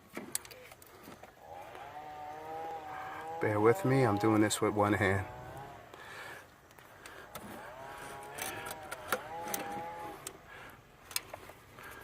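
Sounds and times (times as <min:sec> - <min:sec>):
clicks and knocks of parts: 0:00.0 - 0:01.4, 0:06.7 - 0:10.4, 0:11.0 - 0:12.0.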